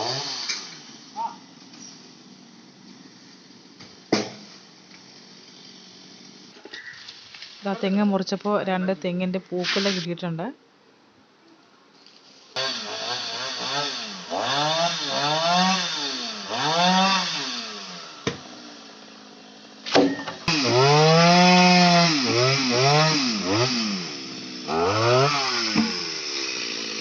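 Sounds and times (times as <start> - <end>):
chainsaw revving: 0.0 - 6.6, 12.6 - 27.0.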